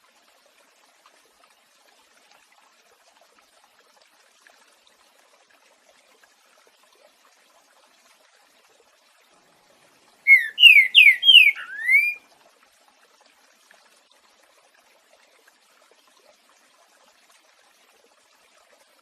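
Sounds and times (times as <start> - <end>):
faint running water: 0.0 - 19.0
bird singing slurred whistles: 10.3 - 12.2.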